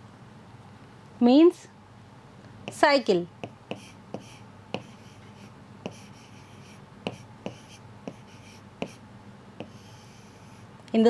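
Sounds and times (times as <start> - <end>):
faint scratching: 3.4 - 9.0, 9.6 - 10.7.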